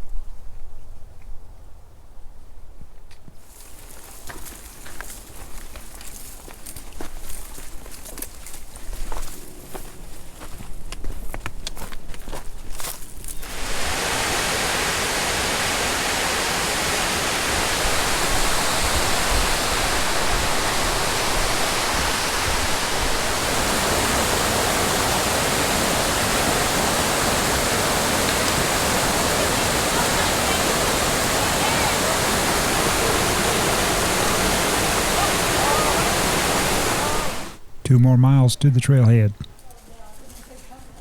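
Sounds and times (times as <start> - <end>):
flowing water rushing: 13.4 - 37.6.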